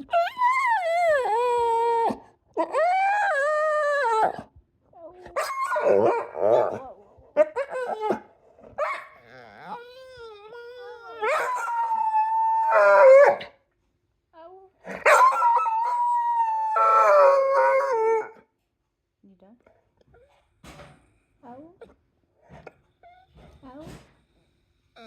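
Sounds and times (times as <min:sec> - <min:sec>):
dog howling and whining: 0:00.0 - 0:13.6, 0:14.8 - 0:18.4.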